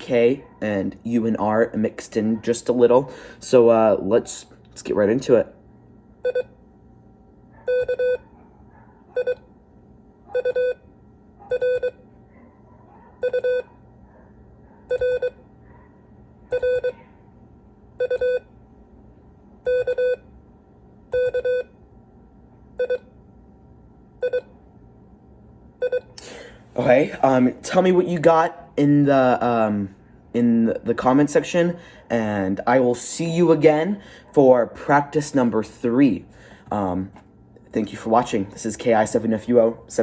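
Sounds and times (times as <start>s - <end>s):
morse code tone: 7.7s - 8.2s, 10.4s - 10.9s, 13.2s - 13.7s, 14.9s - 15.4s, 18.0s - 18.5s.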